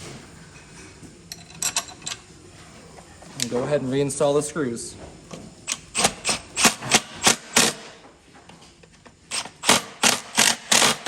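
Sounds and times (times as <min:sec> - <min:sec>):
impact driver bursts: 0:05.9 - 0:08.0, 0:09.3 - 0:11.0.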